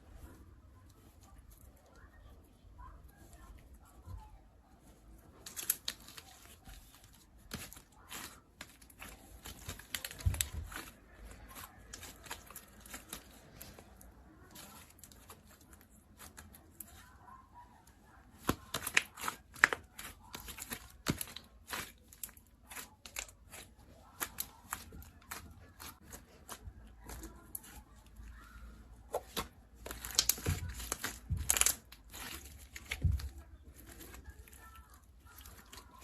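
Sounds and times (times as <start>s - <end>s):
slime crackling and popping: 18.3s - 28.0s, 29.0s - 36.0s.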